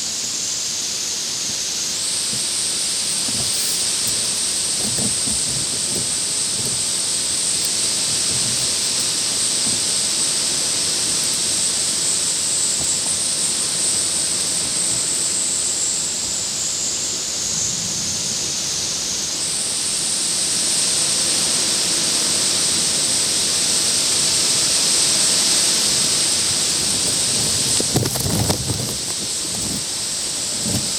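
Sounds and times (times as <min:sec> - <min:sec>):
heavy rain falling: 0:02.2 - 0:13.3
windstorm: 0:02.3 - 0:10.2, 0:26.0 - 0:30.9.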